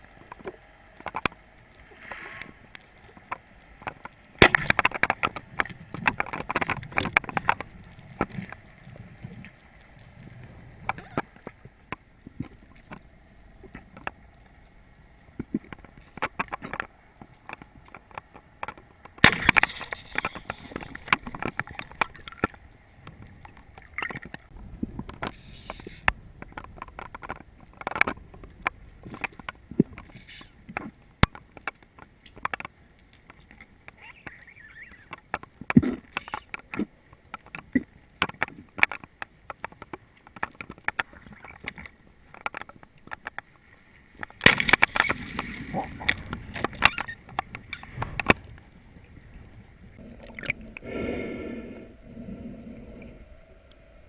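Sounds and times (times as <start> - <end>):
water sloshing and gurgling: 0.0 - 54.0
irregular clicks and knocks: 15.4 - 34.0, 35.1 - 45.5
water splashing: 44.0 - 50.9.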